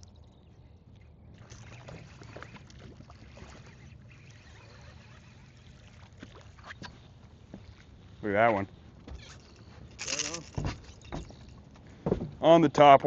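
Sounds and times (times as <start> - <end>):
water lapping at a boat: 0.0 - 12.5
small clicks and knocks: 9.0 - 12.3.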